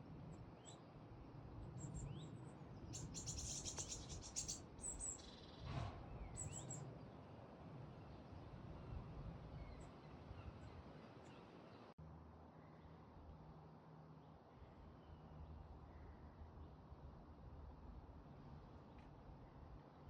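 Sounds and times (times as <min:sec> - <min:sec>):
birds chirping: 0:01.8 - 0:05.6
bird trill: 0:02.9 - 0:05.6.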